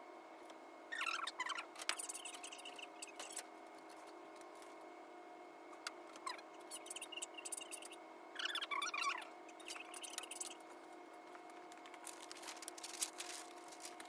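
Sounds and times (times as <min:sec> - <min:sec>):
electrical hum: 0:00.0 - 0:14.0
high squeaky chirps: 0:00.9 - 0:03.4, 0:06.2 - 0:10.6.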